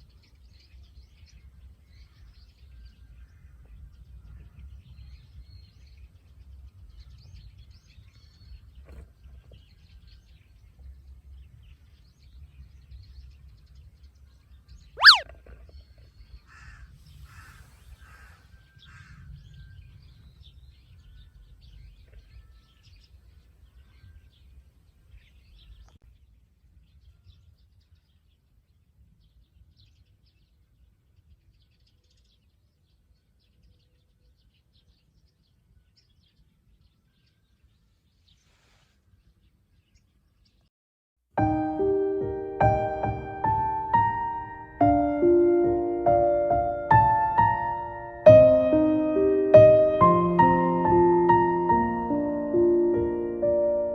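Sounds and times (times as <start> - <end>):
birds chirping: 15.0 - 15.3, 41.4 - 53.9.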